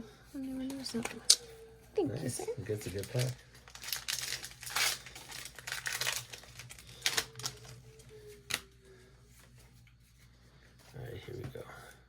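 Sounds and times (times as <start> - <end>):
wrappers crinkling: 2.6 - 8.8.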